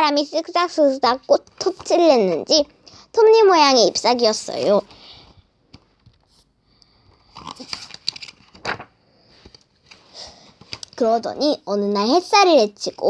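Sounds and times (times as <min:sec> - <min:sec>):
paper rustling and crinkling: 0:07.2 - 0:11.0.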